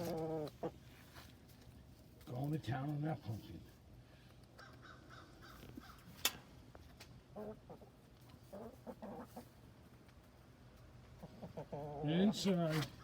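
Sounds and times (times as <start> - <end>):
chickens clucking: 0.0 - 1.2, 4.4 - 13.0.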